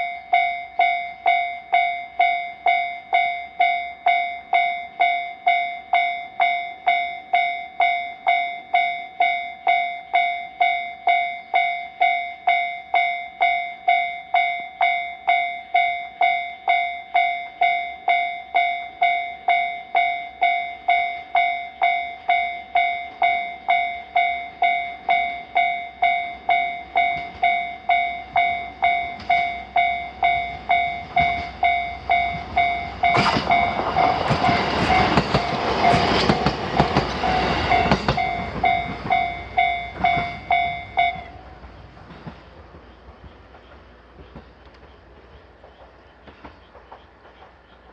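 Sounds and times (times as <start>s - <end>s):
railroad crossing bell ringing: 0.0s - 42.2s
train passing with rumble: 18.9s - 47.9s.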